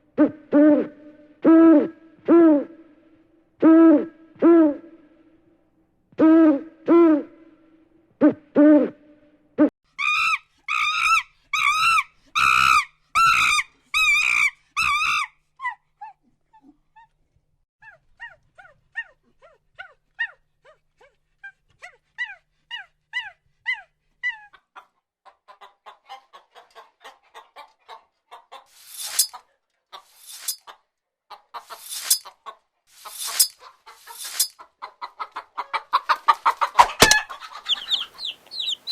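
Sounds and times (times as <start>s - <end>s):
loud animal calls: 36.8s - 38.9s
short falling chirps: 37.0s - 38.9s.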